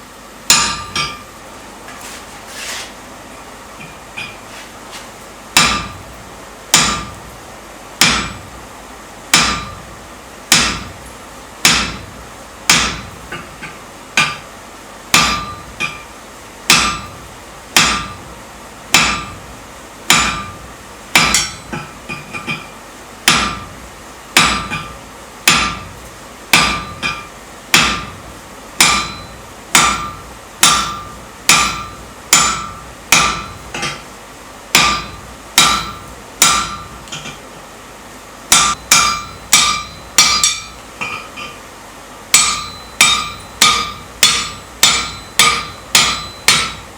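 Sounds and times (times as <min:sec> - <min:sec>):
hammer striking steel on anvil: 0:00.5 - 0:01.3, 0:03.8 - 0:04.5, 0:05.6 - 0:06.0, 0:06.7 - 0:07.2, 0:08.0 - 0:08.5, 0:09.3 - 0:09.9, 0:10.5 - 0:11.0, 0:11.6 - 0:12.1, 0:12.7 - 0:14.5, 0:15.1 - 0:18.3, 0:18.9 - 0:19.4, 0:20.1 - 0:23.8, 0:24.4 - 0:28.2, 0:28.8 - 0:34.1, 0:34.7 - 0:37.5, 0:38.5 - 0:41.7, 0:42.3 - 0:46.9.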